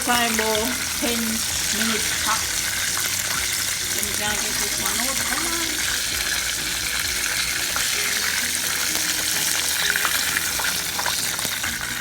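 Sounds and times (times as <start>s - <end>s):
chicken deep-frying in oil: 0.0s - 12.0s.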